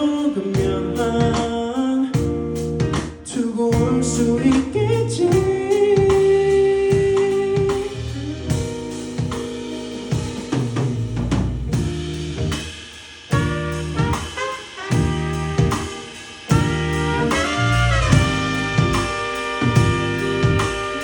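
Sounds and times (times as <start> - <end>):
person singing: 0.0 - 2.4, 3.0 - 8.6
drum kit beat with snare: 0.0 - 21.0.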